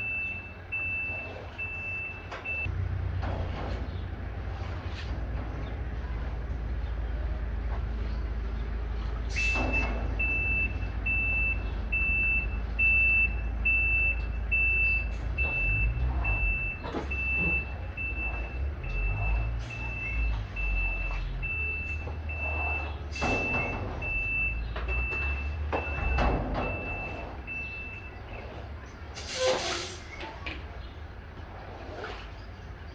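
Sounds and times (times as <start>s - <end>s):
truck reversing alarm beeping: 0.0s - 2.8s, 9.2s - 31.3s
diesel engine rumbling: 0.0s - 32.9s.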